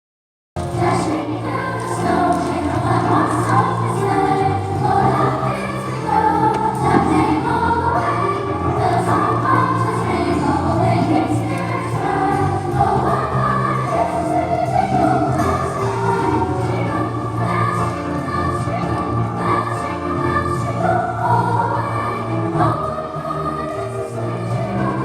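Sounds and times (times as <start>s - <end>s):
choir singing sustained chords: 0.6s - 25.0s.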